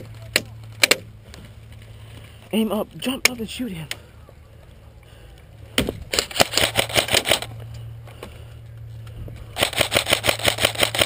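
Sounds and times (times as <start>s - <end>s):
airsoft rifle firing full auto: 6.1s - 7.5s, 9.6s - 11.0s.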